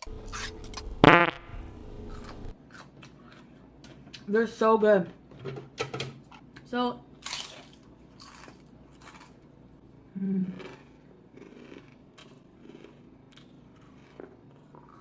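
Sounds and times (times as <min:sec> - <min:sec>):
crunching and chewing: 0:02.1 - 0:04.3, 0:07.2 - 0:09.6, 0:10.4 - 0:15.0
person humming low: 0:10.1 - 0:10.6.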